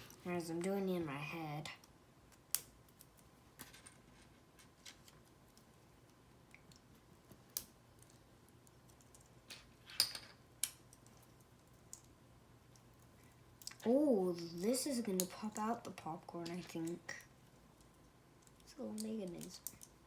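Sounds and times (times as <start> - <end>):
plastic building bricks clicking: 17.8 - 20.0.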